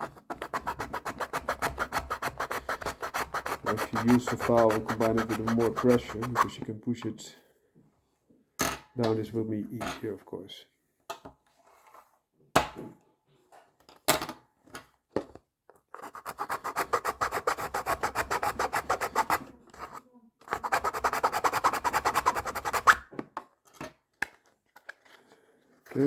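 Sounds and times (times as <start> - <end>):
hand file rasping: 0.0 - 6.6, 16.0 - 23.0.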